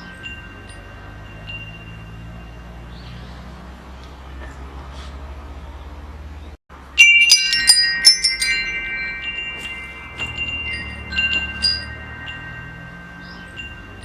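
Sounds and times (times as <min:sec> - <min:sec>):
metal wind chimes ringing: 0:00.0 - 0:03.8, 0:06.8 - 0:14.0.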